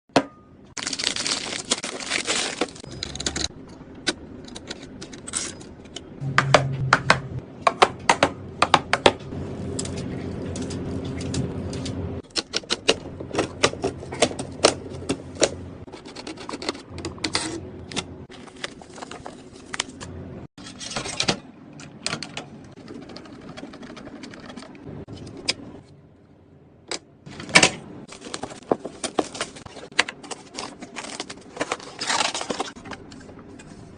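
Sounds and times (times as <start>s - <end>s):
low hum: 5.9s - 7.6s.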